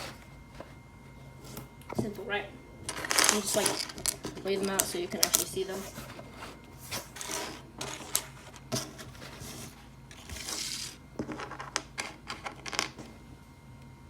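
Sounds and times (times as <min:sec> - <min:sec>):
rustling scrape: 0:05.4 - 0:11.0.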